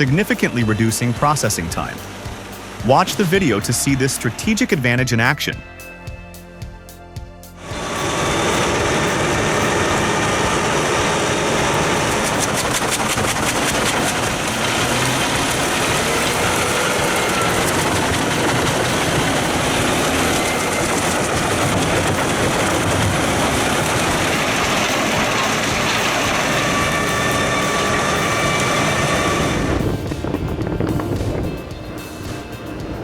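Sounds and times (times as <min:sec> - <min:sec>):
wood chipper working: 0:07.6 - 0:31.4.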